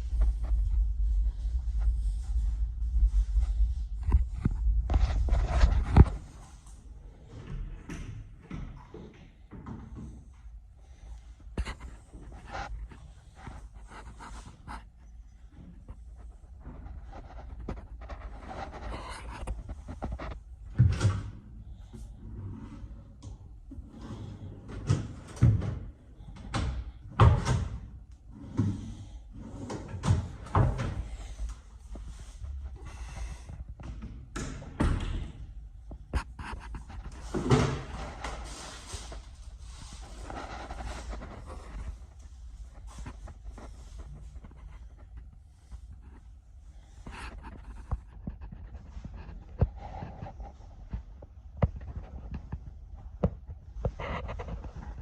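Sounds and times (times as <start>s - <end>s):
steady low hum: 0.0s - 8.4s.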